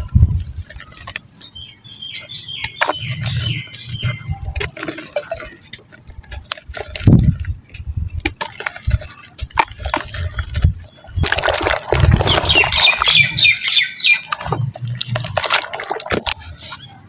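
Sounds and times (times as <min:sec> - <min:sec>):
wet mud crumbling and crunching: 0:00.0 - 0:17.0.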